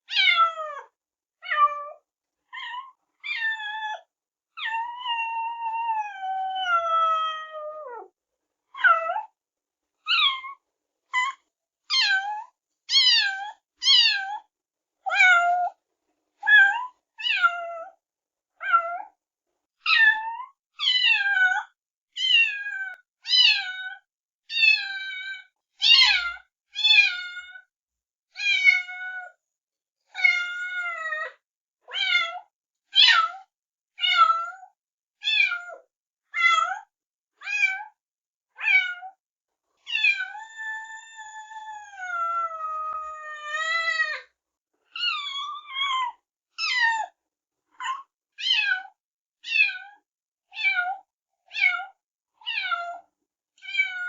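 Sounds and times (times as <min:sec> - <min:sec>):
kittens meowing: 0:39.9 - 0:43.9.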